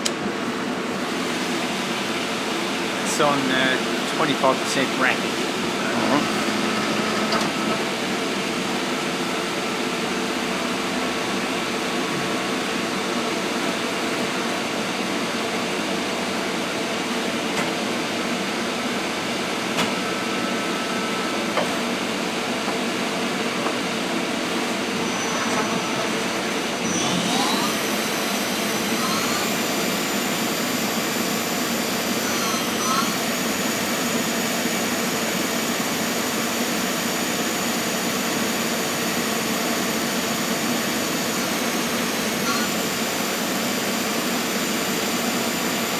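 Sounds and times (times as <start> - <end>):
lathe machine whirr: 0.3 - 10.4, 22.8 - 45.9
high machine whine: 2.7 - 7.8, 24.7 - 45.9.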